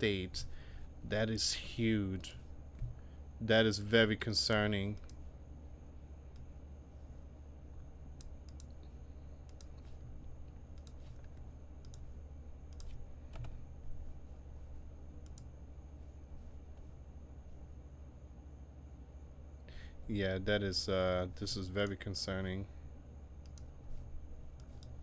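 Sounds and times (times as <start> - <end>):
steady low hum: 0.0 - 25.0
keyboard and mouse clicks: 2.7 - 3.0, 8.2 - 13.6, 15.2 - 15.5, 23.4 - 23.7, 24.5 - 25.0.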